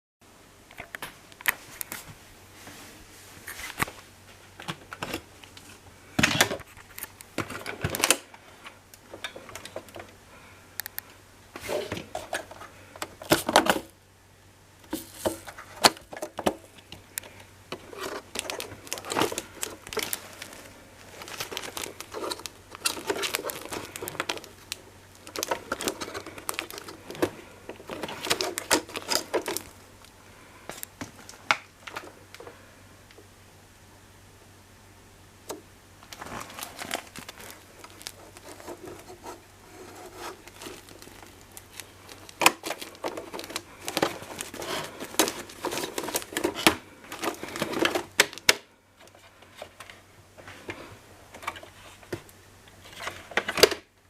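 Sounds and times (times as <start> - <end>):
hard plastic parts clicking: 14.9 - 29.7.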